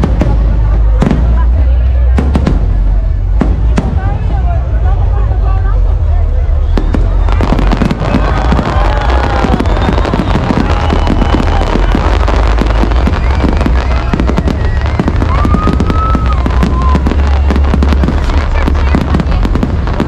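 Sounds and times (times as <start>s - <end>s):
deep rumble: 0.0s - 20.0s
fireworks bangs and crackling: 0.0s - 20.0s
fireworks whistling: 6.5s - 20.0s.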